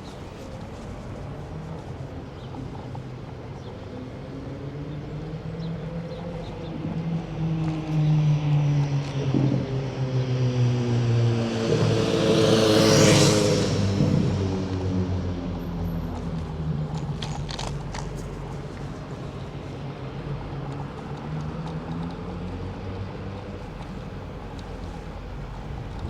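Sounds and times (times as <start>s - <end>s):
engine running close by: 0.0s - 26.0s
vehicle passing with loud rush: 7.0s - 16.7s, 23.2s - 26.0s.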